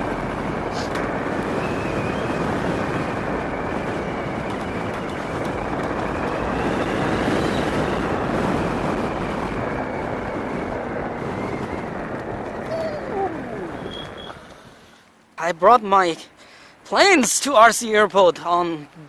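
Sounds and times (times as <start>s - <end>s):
wind and road noise: 0.0s - 19.0s.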